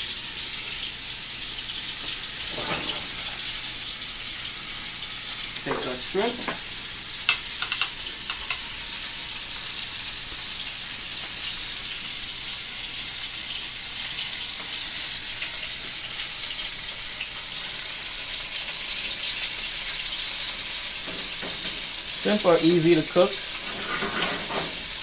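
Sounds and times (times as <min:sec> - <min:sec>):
shrimp sizzling in a frying pan: 0:00.0 - 0:25.0
sharp oil crackles: 0:09.2 - 0:25.0.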